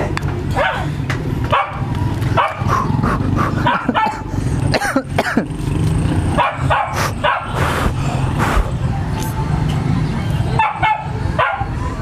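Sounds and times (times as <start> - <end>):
dog barking and yelping: 0.5 - 0.9, 1.5 - 2.9, 3.6 - 4.3, 6.4 - 7.6, 10.6 - 11.8.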